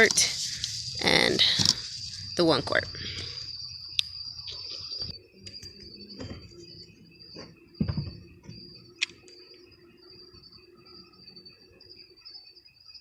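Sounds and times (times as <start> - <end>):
crickets chirring: 0.0 - 13.0
knocks and clunks: 6.1 - 8.8.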